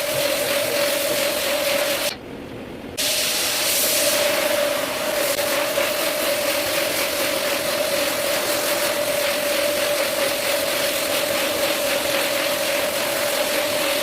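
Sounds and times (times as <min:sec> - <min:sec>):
rushing hiss: 0:03.0 - 0:14.0.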